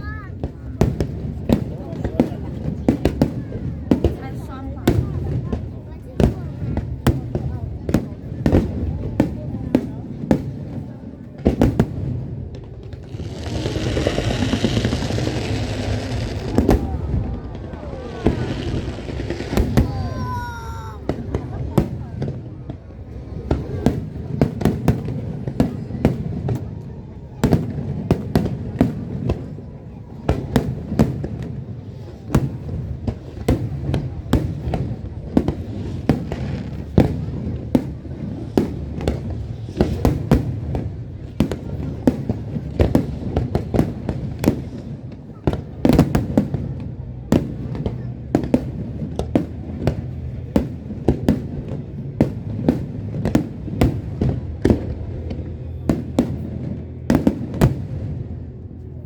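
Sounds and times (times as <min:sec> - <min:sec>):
fireworks bangs: 0:00.0 - 0:58.6
low continuous rumble: 0:46.5 - 0:59.0.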